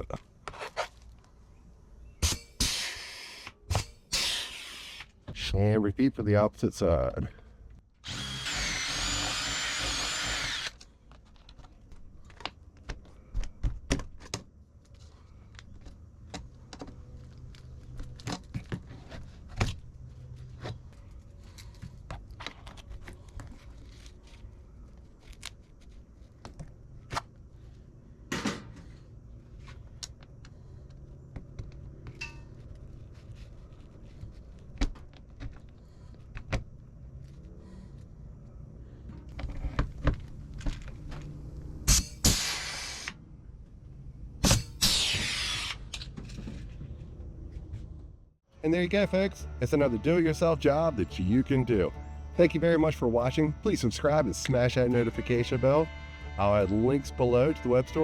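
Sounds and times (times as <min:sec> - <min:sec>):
power drill whining: 0:08.0 - 0:10.8, 0:45.0 - 0:46.0.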